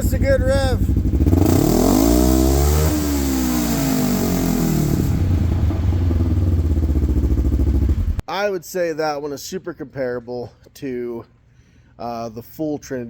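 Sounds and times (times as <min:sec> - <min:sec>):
engine revving then idling: 0:00.0 - 0:08.2.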